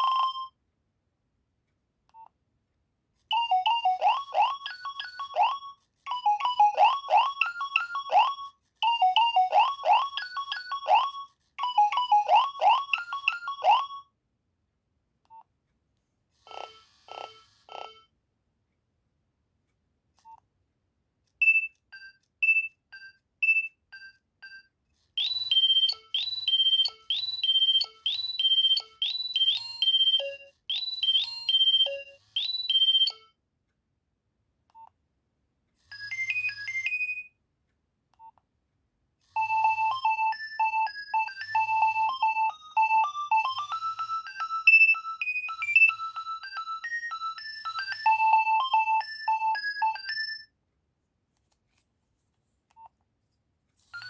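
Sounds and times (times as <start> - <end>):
mobile phone ringtones: 0.0 - 0.5, 3.3 - 14.1, 16.5 - 18.1, 21.4 - 33.4, 35.8 - 37.3, 39.3 - 50.5
alternating high and low beeps: 25.2 - 33.3, 39.4 - 50.5.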